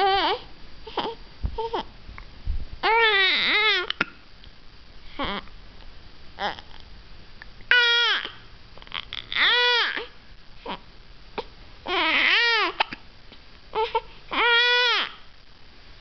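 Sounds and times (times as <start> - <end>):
baby squealing: 7.7 - 8.4.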